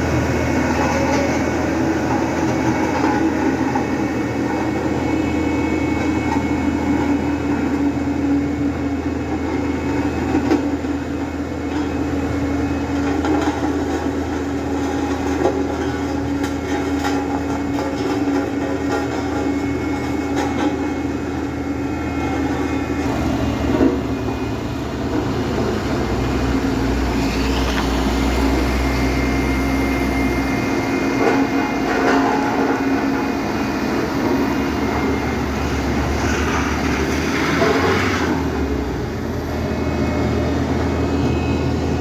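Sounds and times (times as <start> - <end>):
heavy vehicle engines droning: 0.0 - 42.0
traffic noise: 21.6 - 42.0.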